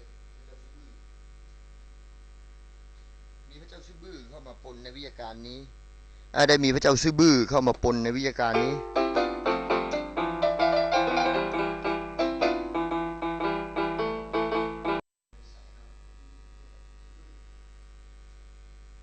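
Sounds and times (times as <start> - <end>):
faint steady hum: 0.0 - 19.0
held low keyboard note: 8.5 - 15.0
keyboard playing short notes: 8.5 - 15.0.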